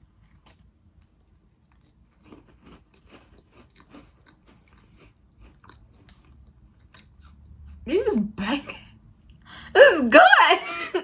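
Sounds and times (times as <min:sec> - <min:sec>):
person chewing crunchy cookie: 0:00.0 - 0:07.8.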